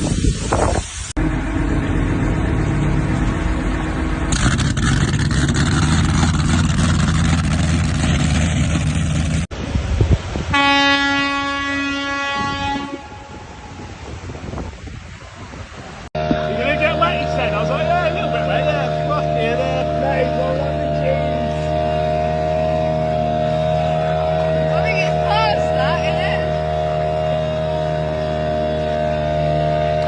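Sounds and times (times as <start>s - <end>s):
rush of wind or water: 0.0s - 5.0s, 9.5s - 18.0s
loud steady horn blast: 10.5s - 14.2s, 16.2s - 30.0s.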